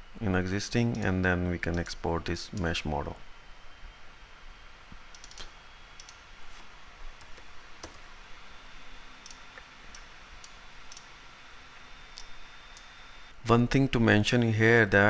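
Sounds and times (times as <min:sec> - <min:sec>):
faint steady hiss: 0:00.0 - 0:15.0
computer mouse clicks: 0:05.0 - 0:06.2, 0:07.2 - 0:08.1, 0:09.2 - 0:11.2, 0:12.1 - 0:13.0.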